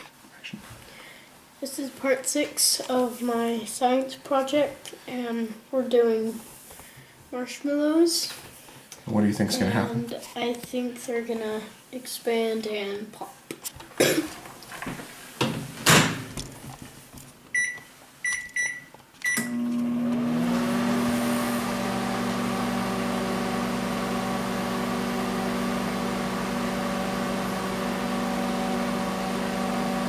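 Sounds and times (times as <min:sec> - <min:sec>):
short keypad beeps: 0:17.6 - 0:19.5
microwave oven humming: 0:19.4 - 0:30.0.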